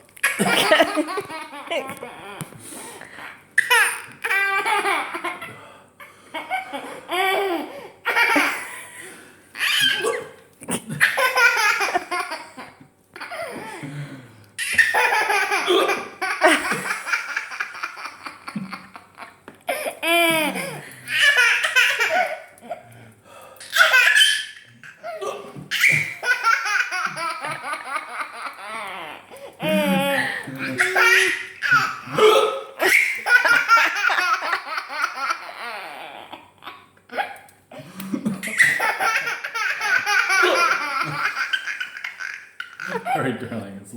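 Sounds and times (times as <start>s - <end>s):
baby laughing: 0.2s - 2.5s, 3.6s - 5.5s, 9.6s - 13.8s, 14.6s - 22.5s, 23.6s - 37.4s, 38.3s - 43.2s.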